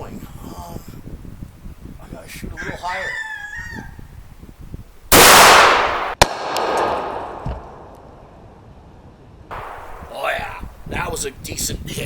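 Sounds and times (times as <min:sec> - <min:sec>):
loud gunshot: 0:05.1 - 0:07.9, 0:09.5 - 0:10.1
sharp crack: 0:05.1 - 0:08.1, 0:09.5 - 0:10.1.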